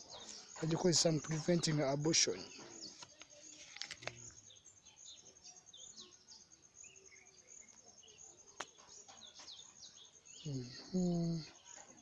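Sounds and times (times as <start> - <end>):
insect chirping: 0.0 - 12.0.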